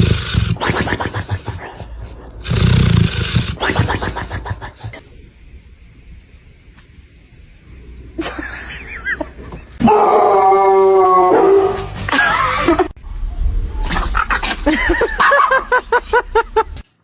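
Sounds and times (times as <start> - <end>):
dog howling: 9.8 - 12.0.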